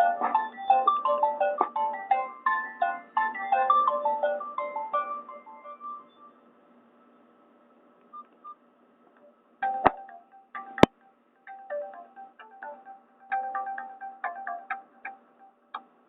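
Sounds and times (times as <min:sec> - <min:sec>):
phone ringtone melody: 0:00.0 - 0:06.3, 0:09.6 - 0:15.2
chime-like ringtone: 0:00.0 - 0:06.4, 0:09.6 - 0:10.9, 0:11.5 - 0:15.1.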